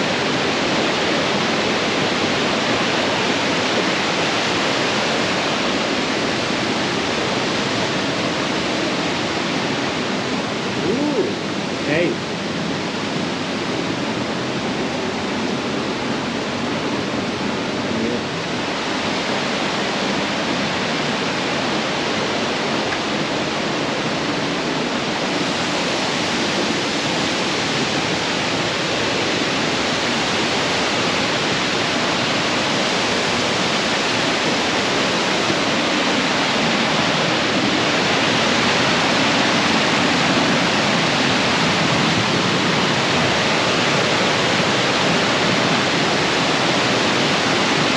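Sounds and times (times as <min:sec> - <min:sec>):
waterfall roaring: 0:00.0 - 0:47.9.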